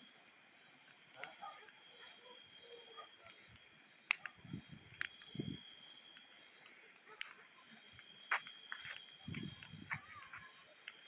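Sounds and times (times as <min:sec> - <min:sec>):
bonfire burning: 0:00.1 - 0:11.0
high insect chirring: 0:00.1 - 0:11.0
burning wood popping: 0:02.8 - 0:11.0.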